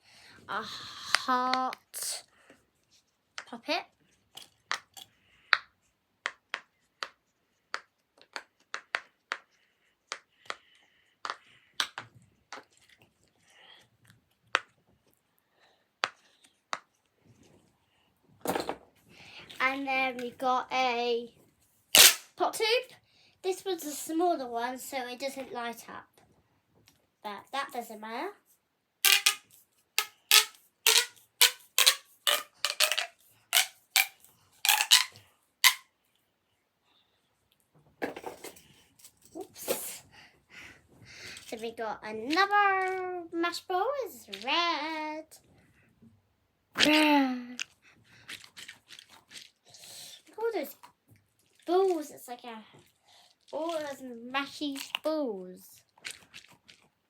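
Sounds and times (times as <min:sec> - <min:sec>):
plastic pop tube popping: 0:04.7 - 0:09.4, 0:11.2 - 0:12.7, 0:22.0 - 0:22.3, 0:29.0 - 0:35.8
pop-it toy bubbles popping: 0:29.0 - 0:29.4, 0:30.0 - 0:34.1, 0:34.7 - 0:35.8.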